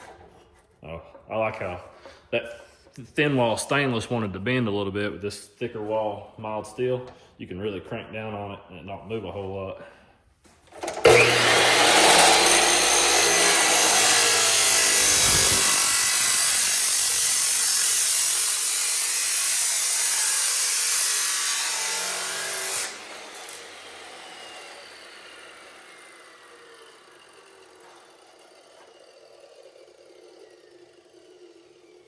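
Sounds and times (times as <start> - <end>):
motor winding down whine: 10.8 - 17.1, 25.6 - 32.0
chop saw grinding steel pipe: 10.8 - 32.0.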